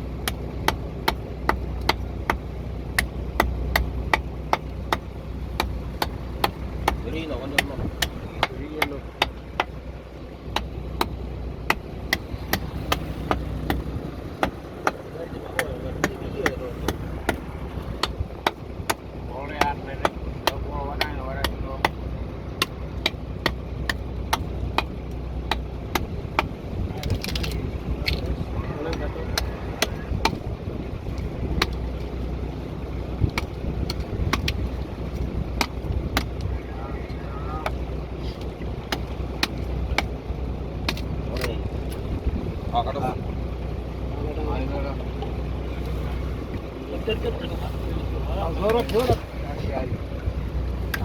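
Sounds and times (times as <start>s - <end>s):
boat engine humming: 0.0s - 51.0s
sharp knocks: 10.5s - 22.0s
sharp clicks and knocks: 22.6s - 30.5s, 31.1s - 32.2s, 33.2s - 36.5s.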